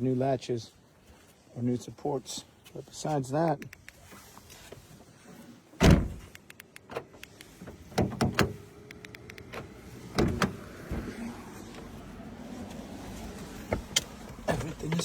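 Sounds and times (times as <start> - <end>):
heavy thump from car: 5.8 - 6.2.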